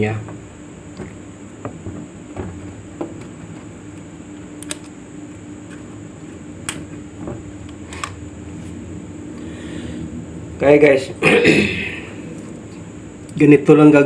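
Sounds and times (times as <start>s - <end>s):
steady background hum: 0.0s - 14.0s
clicks and taps from fan motor: 0.1s - 5.9s, 6.6s - 8.2s.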